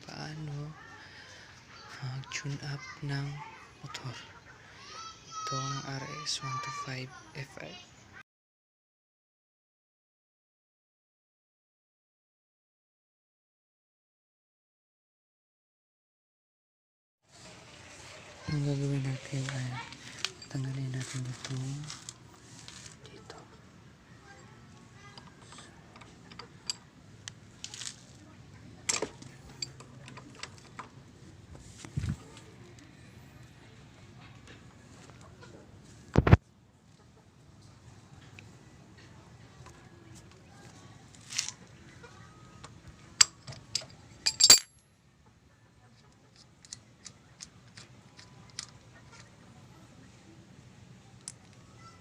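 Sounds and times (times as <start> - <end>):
metal tools clinking: 20.0 - 22.1, 28.9 - 30.8, 43.2 - 44.8
metallic clinks of hand tools: 43.2 - 44.8.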